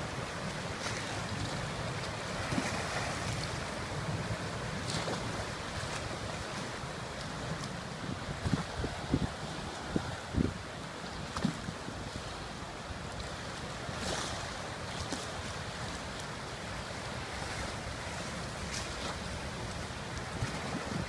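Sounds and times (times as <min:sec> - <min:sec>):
wind buffeting microphone: 0:00.0 - 0:12.3, 0:17.2 - 0:21.0
river rushing: 0:00.0 - 0:21.0.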